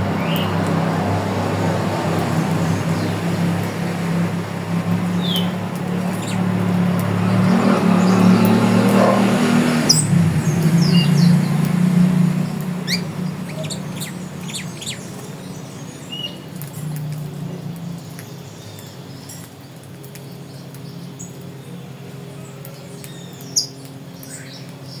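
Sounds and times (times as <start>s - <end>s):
loud low hum: 0.0s - 16.2s
birds chirping: 0.0s - 25.0s.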